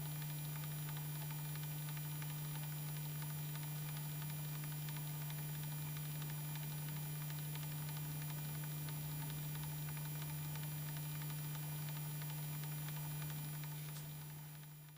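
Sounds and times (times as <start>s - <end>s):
low electrical hum: 0.0s - 14.9s.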